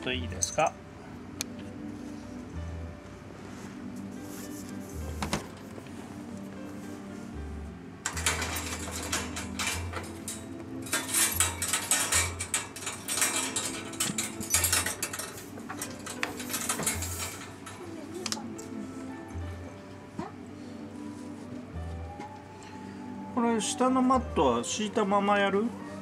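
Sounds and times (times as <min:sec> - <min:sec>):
soft background music: 0:00.0 - 0:26.0
rattling of wire cage: 0:08.0 - 0:18.8.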